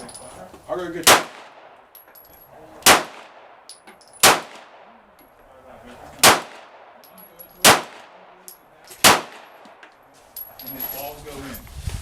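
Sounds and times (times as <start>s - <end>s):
pistol shots: 1.0s - 1.8s, 2.8s - 4.9s, 6.2s - 7.0s, 7.6s - 8.4s, 9.0s - 9.8s.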